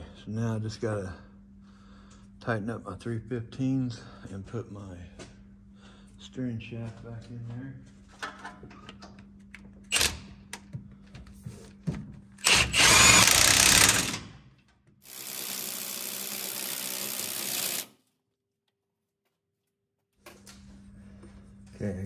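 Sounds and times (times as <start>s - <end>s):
tool handling clicks and knocks: 8.1s - 9.3s
power tool running: 9.9s - 10.3s, 12.4s - 14.4s, 15.0s - 18.0s.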